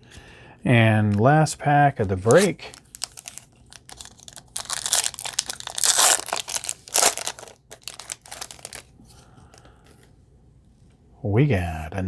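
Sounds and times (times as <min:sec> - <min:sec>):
foil wrapper tearing and crinkling: 0:02.2 - 0:08.9.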